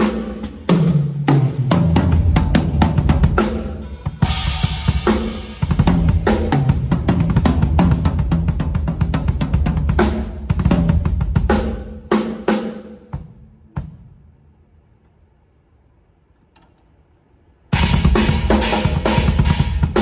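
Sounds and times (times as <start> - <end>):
drum kit groove: 0.0 - 14.3, 17.8 - 20.0
cymbal crashes: 2.1 - 7.0, 17.8 - 20.0.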